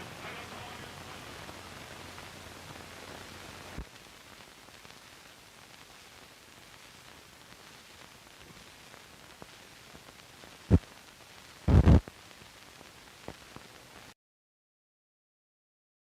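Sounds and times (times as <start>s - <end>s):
film soundtrack hiss: 0.0s - 14.2s
sharp pops: 11.7s - 12.1s.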